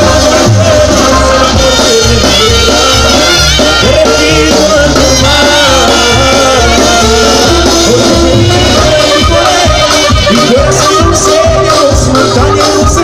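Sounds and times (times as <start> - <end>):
loud brass band music: 0.0 - 13.0
steady bass beat: 0.0 - 13.0.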